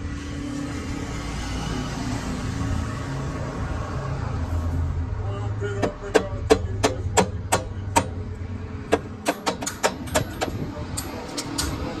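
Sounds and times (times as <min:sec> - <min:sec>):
hammer striking metal: 0:05.8 - 0:08.2, 0:08.9 - 0:11.8.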